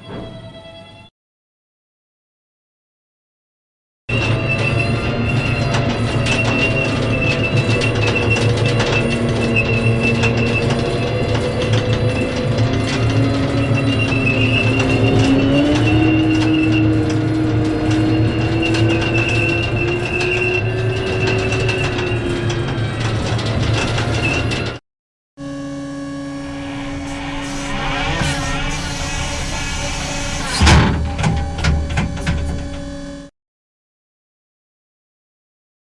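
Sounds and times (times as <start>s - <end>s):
tank turret mechanical whine: 4.1s - 24.8s, 25.4s - 33.3s
low hum: 25.4s - 33.3s.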